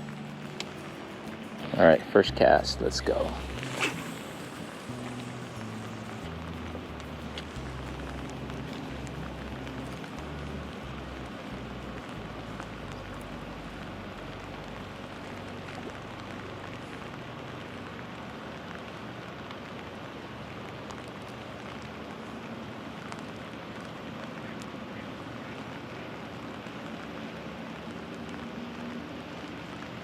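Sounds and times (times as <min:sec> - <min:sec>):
low rumble: 0:00.0 - 0:17.8
steady rain falling: 0:00.0 - 0:30.0.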